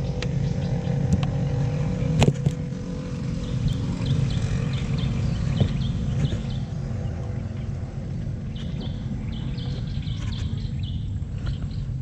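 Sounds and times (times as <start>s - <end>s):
small engine running: 0.0s - 11.6s.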